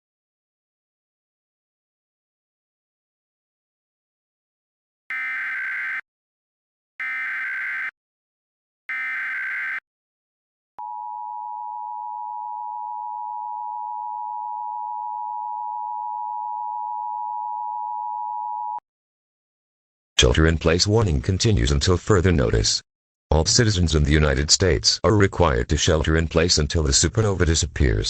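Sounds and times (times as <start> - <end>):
two-tone attention signal: 8.9 - 9.8.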